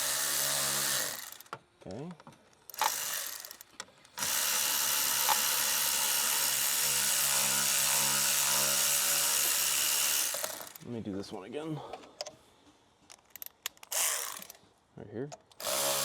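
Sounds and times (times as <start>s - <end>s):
cordless power tool spinning: 0.0s - 1.5s, 2.6s - 10.9s, 13.8s - 14.6s, 15.6s - 16.0s.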